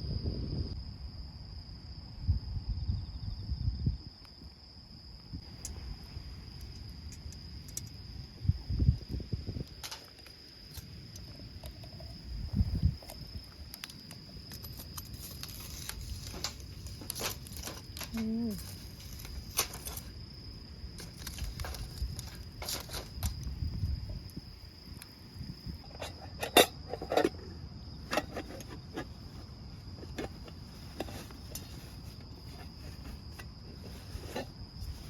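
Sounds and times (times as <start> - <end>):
wind buffeting microphone: 0.0 - 0.9, 2.2 - 4.2, 5.3 - 9.8, 12.1 - 13.6, 21.4 - 25.9
crickets chirping: 0.0 - 35.0.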